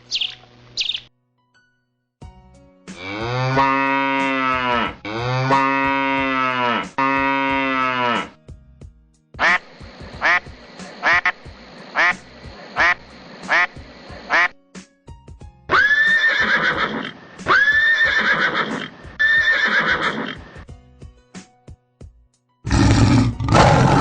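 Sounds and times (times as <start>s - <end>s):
duck quacking: 9.4s - 12.2s, 12.8s - 14.6s
horse neighing: 15.7s - 20.5s.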